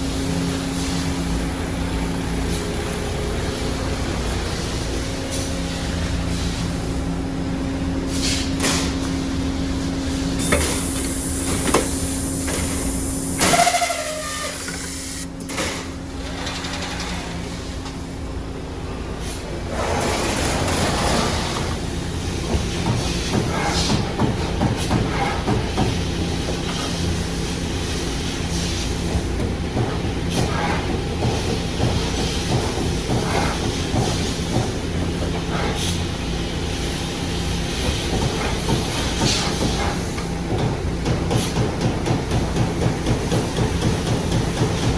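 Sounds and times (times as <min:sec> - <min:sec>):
punch press humming: 0:09.8 - 0:16.0.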